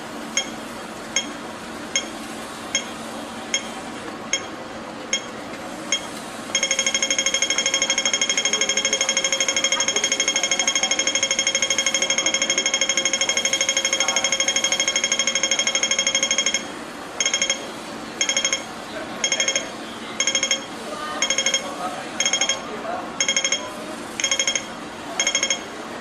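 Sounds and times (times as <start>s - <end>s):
pedestrian crossing signal beeping: 3.5s - 25.7s.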